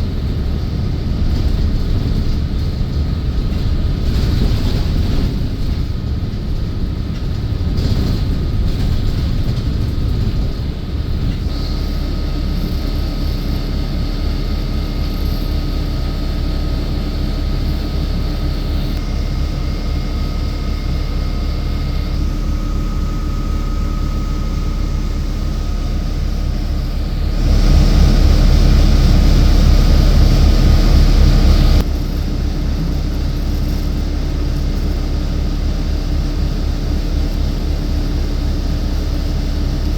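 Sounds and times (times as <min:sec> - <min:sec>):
bus engine and road rumble: 0:00.0 - 0:39.9
faint steady whine: 0:09.5 - 0:39.9.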